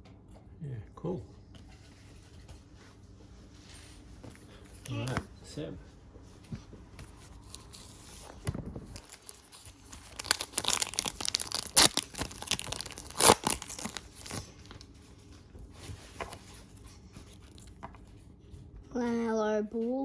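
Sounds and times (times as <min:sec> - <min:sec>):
card pack wrapper tearing: 0:07.0 - 0:14.5
wrapper crinkling: 0:07.0 - 0:14.8, 0:15.9 - 0:18.0.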